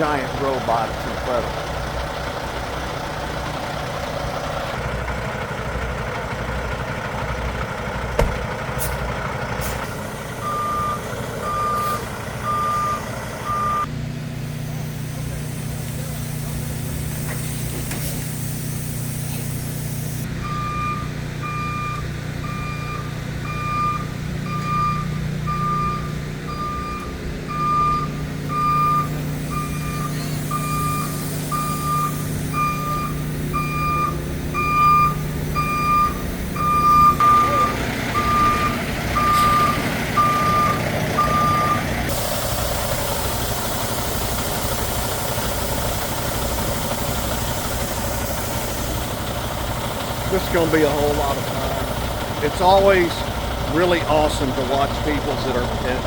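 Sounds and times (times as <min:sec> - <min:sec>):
engine running: 0:00.0 - 0:56.0
backup alarm beeping: 0:10.4 - 0:13.9, 0:20.4 - 0:41.9.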